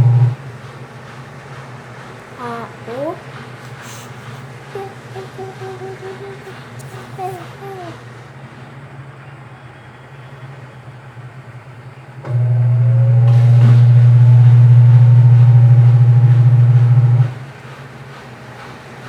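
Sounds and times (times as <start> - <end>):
washing machine running: 0.0 - 19.0.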